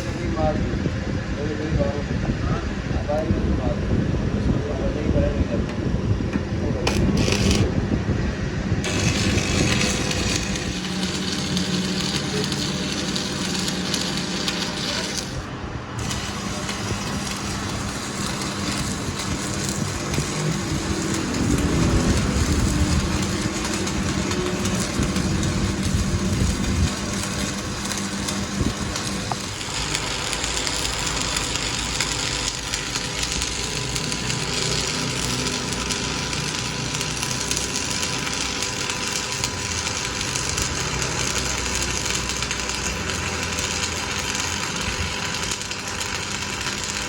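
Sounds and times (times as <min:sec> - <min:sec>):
harsh machine hiss with whine: 0:00.0 - 0:00.6, 0:08.8 - 0:47.0
engine-like machine rumble: 0:00.0 - 0:47.0.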